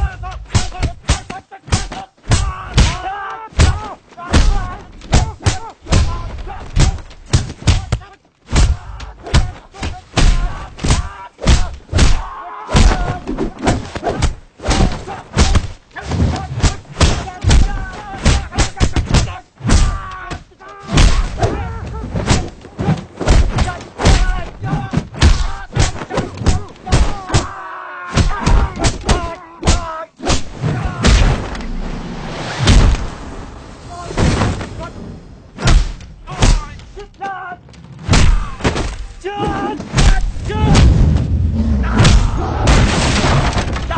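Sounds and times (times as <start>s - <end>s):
grunts and shouts: 0.0s - 31.6s, 38.2s - 42.9s
punch and kick thuds: 3.6s - 20.1s, 20.9s - 27.5s, 28.2s - 31.6s, 32.6s - 33.1s, 35.6s - 36.8s, 38.0s - 39.1s, 39.8s - 43.9s.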